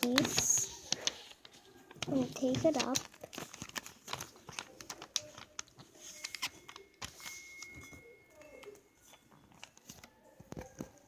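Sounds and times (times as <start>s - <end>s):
paper being folded and creased: 0.0s - 7.7s.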